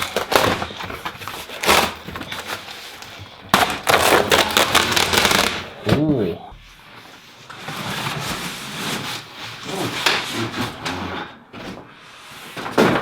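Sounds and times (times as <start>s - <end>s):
cardboard tearing and scraping: 0.0s - 6.1s, 7.5s - 11.4s.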